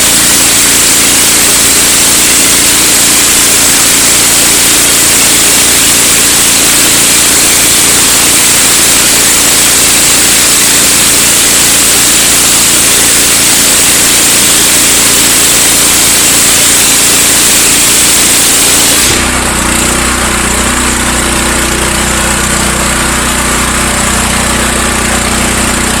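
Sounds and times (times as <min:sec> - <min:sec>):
water spray hissing: 0:00.0 - 0:19.9
pressure washer engine drone: 0:00.0 - 0:26.0.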